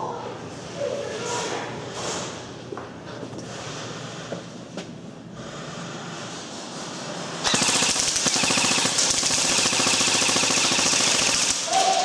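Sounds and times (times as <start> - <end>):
airsoft gun firing full-auto: 7.4 - 11.9.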